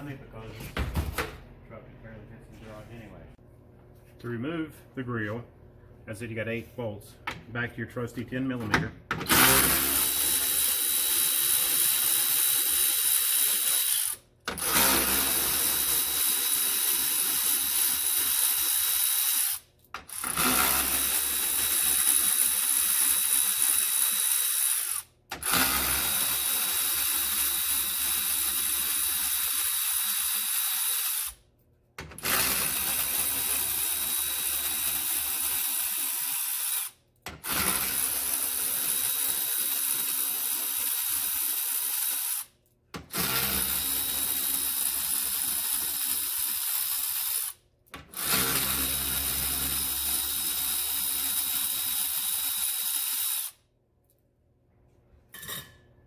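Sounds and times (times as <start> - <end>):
power tool running: 9.2 - 31.4, 32.0 - 53.6.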